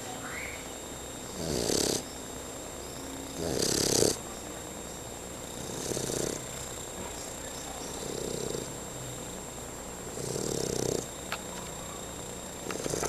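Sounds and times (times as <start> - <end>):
puppy snoring: 1.2 - 2.2, 2.8 - 4.3, 5.4 - 9.3, 10.1 - 13.0.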